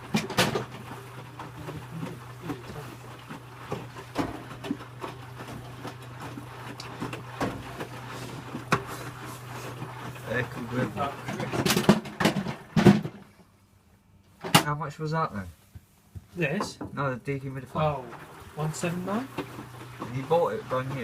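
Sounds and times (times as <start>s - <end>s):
knocks and clunks: 0.0s - 8.9s, 9.8s - 13.3s
washing machine humming: 0.0s - 21.0s.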